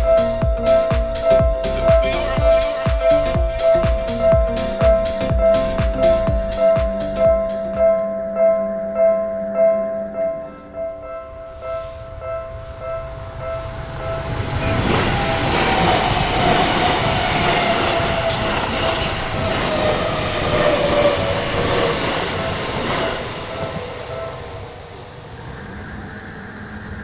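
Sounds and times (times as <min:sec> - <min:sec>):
train whining and squealing: 0:10.0 - 0:27.0
train wheels rumbling on rail: 0:12.6 - 0:24.6.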